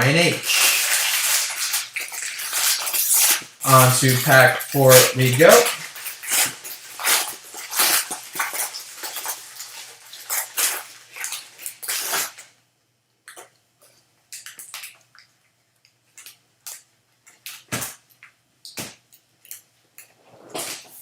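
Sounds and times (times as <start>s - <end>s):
foil wrapper crinkling and tearing: 0.0s - 12.6s
cards crackling and clicking: 0.1s - 12.5s.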